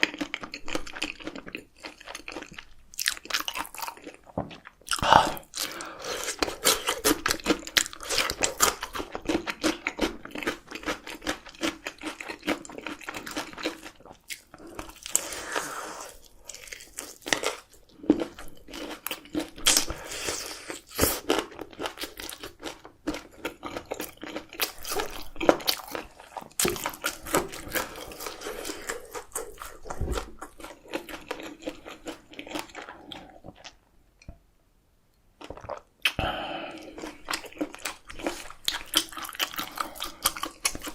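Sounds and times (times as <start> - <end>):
crunchy food being chewed: 0.0 - 33.8, 35.4 - 40.9
wet mouth sounds: 2.4 - 9.2, 35.4 - 40.9.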